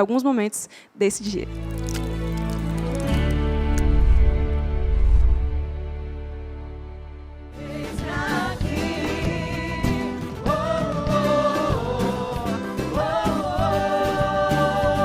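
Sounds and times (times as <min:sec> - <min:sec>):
worship song with band: 0:07.5 - 0:15.0.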